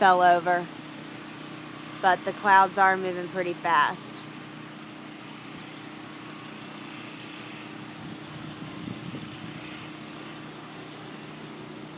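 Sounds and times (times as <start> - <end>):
low mechanical hum: 0.0 - 11.9
strong wind blowing: 8.0 - 9.8.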